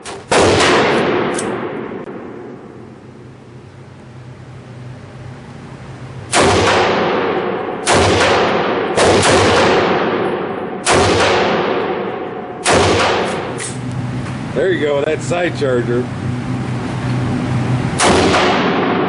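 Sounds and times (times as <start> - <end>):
gunshots with echo: 0.0 - 2.5, 6.3 - 13.8, 18.0 - 19.0.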